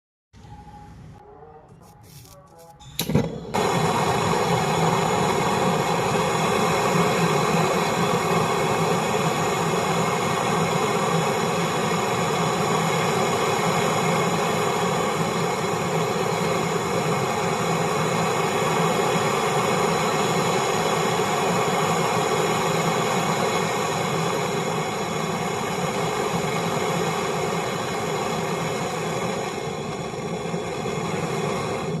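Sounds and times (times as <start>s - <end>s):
torch flame hissing: 3.1s - 32.0s.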